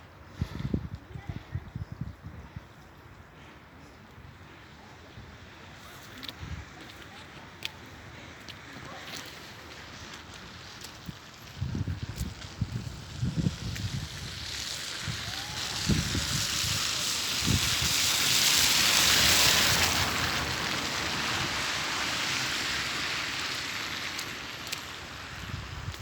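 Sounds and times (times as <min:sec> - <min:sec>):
wind buffeting microphone: 0:00.3 - 0:02.8, 0:11.0 - 0:22.9, 0:25.2 - 0:26.0
storm wind gusting: 0:11.6 - 0:23.7.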